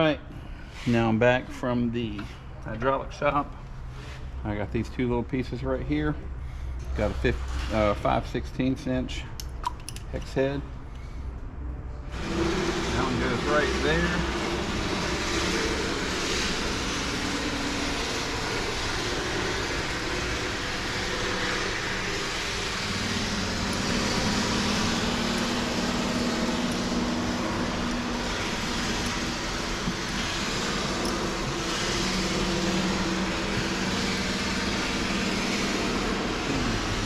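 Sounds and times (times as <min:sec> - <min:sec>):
steady mechanical drone: 0:00.0 - 0:37.0
low wavering hum: 0:10.7 - 0:37.0.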